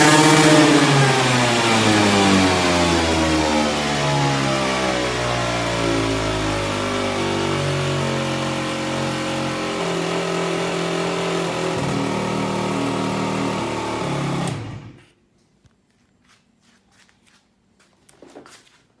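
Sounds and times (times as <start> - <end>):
two-stroke scooter engine running: 0.0 - 15.0.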